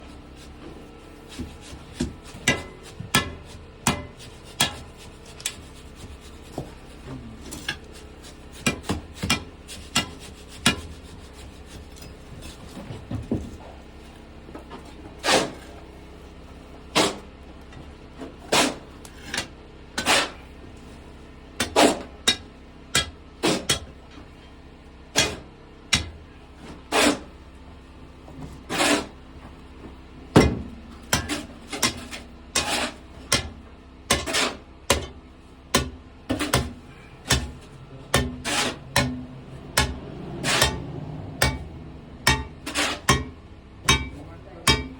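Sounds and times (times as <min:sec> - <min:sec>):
steel rebar knocking and clanking: 0:35.8 - 0:44.9.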